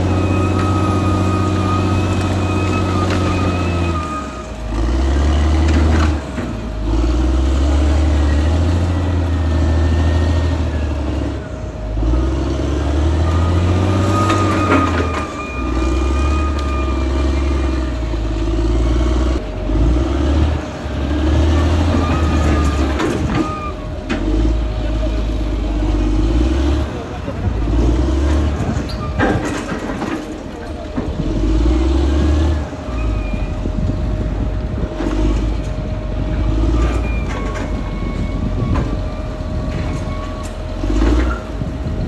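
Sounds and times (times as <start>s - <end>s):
bulldozer diesel engine running: 0.0s - 42.0s
metal clanks: 13.2s - 18.5s, 20.4s - 42.0s.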